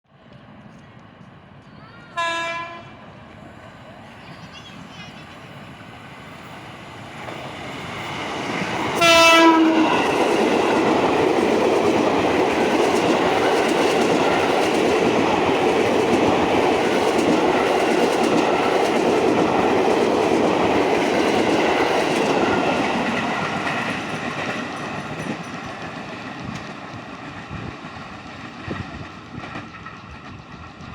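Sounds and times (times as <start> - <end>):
train horn blast: 2.2 - 3.0, 9.0 - 10.2
train wheels clattering on rails: 6.4 - 30.9.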